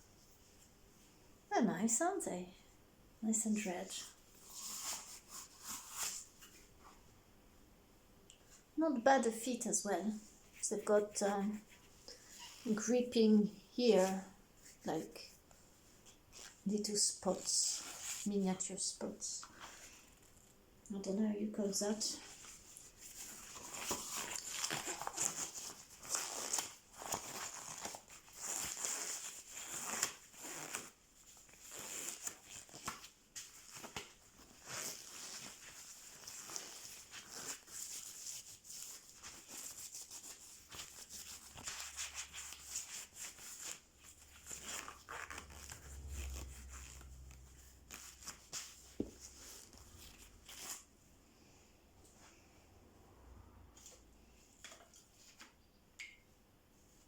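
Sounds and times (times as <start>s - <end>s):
rustling and crinkling: 3.9s - 7.2s, 22.0s - 51.1s
short low rumble: 45.5s - 48.2s.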